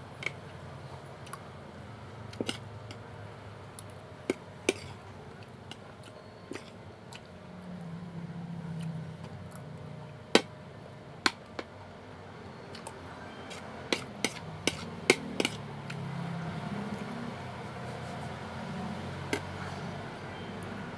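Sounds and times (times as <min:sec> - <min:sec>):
utensils clinking against dish: 0:13.4 - 0:15.6.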